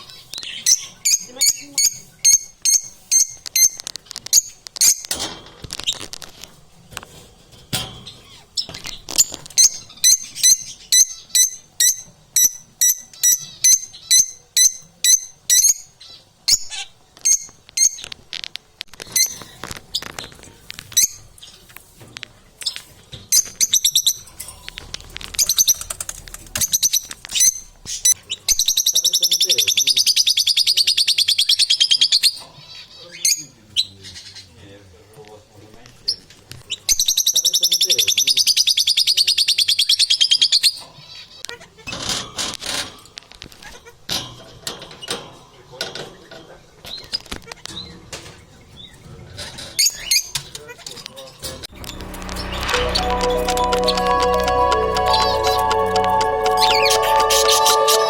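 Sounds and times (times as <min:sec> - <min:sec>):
lovebirds chirping and trilling: 0:00.0 - 0:05.1, 0:08.0 - 0:18.2.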